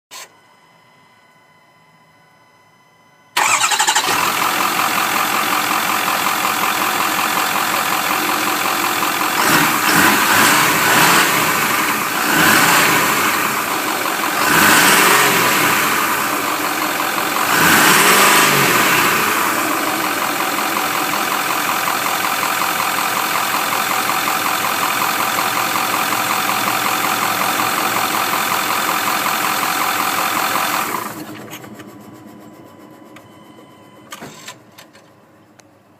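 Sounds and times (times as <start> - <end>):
car engine starting and revving: 3.4 - 32.1.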